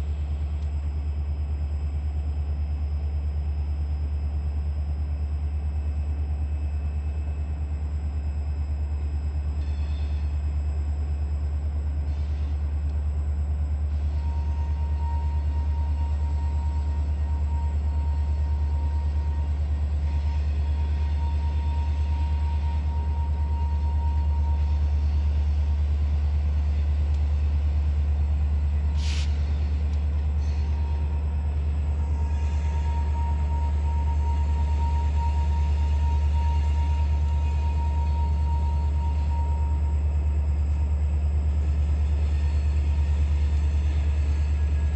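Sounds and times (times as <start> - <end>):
freight train rumbling by: 7.5 - 44.9
brief hiss: 28.9 - 29.7.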